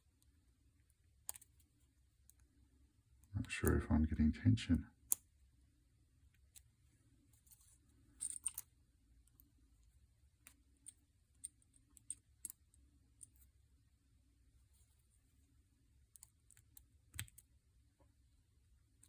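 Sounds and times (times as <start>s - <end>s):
faint metal clicks of lock picking: 1.2s - 2.5s, 6.3s - 6.7s, 8.2s - 9.5s, 10.4s - 13.5s, 16.1s - 17.5s.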